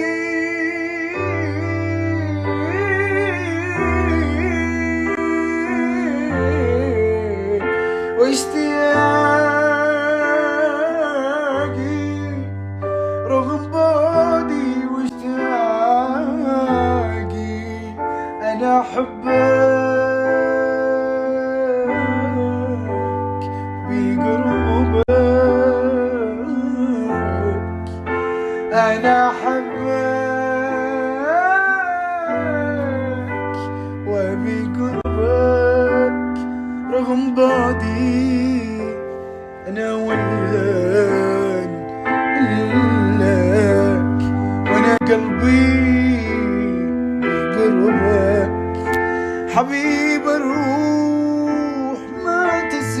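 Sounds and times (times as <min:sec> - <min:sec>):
man singing ornamented melody: 0:00.0 - 0:53.0
sustained keyboard chords: 0:00.0 - 0:53.0
sharp click: 0:48.8 - 0:49.1.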